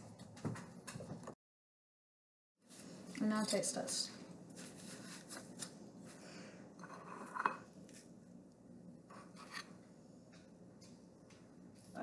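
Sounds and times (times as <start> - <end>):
spoon scraping and clicking in dish: 9.1 - 9.8.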